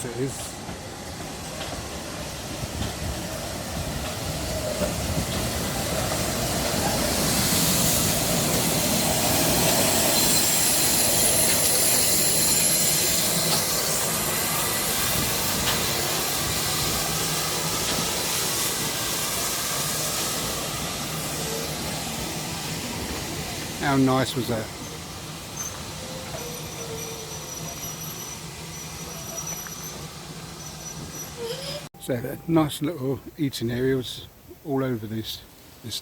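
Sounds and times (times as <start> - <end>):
steam train running: 0.0 - 34.2
high metallic wheel squeal: 9.9 - 14.1, 24.8 - 32.1
clanks from rails: 15.6 - 16.0, 17.8 - 18.2.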